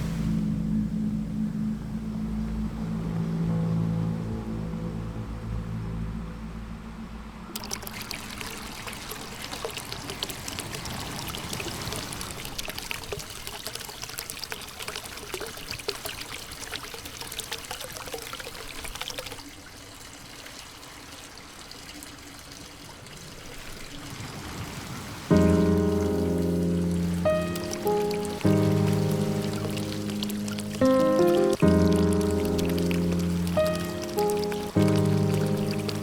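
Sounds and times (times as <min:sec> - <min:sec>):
music: 0:00.0 - 0:07.4, 0:25.3 - 0:36.0
water trickling: 0:00.0 - 0:24.4, 0:25.2 - 0:36.0
water splashing and pouring: 0:07.5 - 0:36.0.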